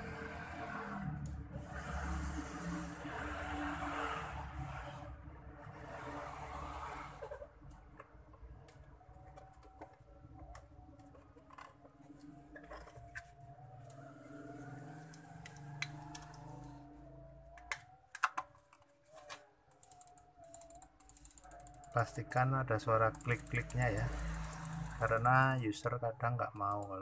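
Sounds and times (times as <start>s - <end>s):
computer mouse clicks and taps: 15.0s - 16.6s.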